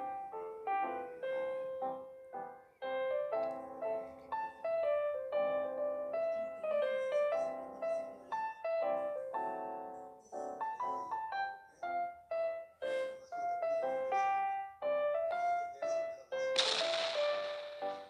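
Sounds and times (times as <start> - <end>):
lively piano music: 0.0 - 18.0.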